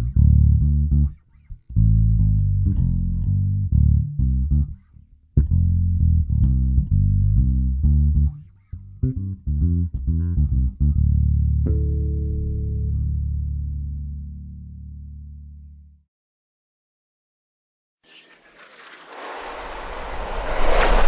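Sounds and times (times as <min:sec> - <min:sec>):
slap bass guitar notes: 0:00.0 - 0:16.0.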